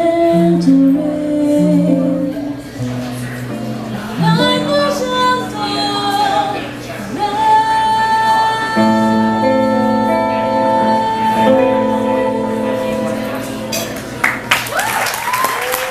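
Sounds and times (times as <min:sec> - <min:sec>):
woman singing jazz ballad: 0:00.0 - 0:02.7, 0:04.1 - 0:13.7
instrumental accompaniment: 0:08.2 - 0:14.5.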